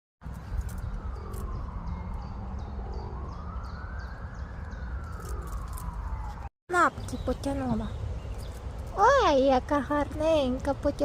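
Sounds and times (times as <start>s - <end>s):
siren wailing: 0.6s - 6.5s.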